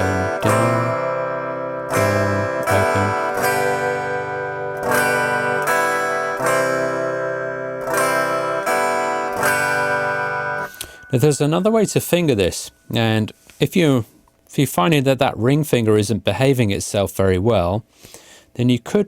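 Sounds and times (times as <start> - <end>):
acoustic guitar strumming: 0.0 - 13.5.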